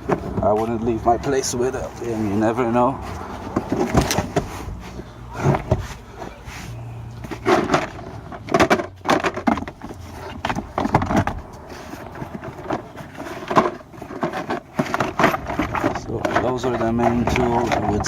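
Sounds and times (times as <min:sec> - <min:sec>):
tools knocking and clunking: 0:00.0 - 0:06.5, 0:07.1 - 0:18.0.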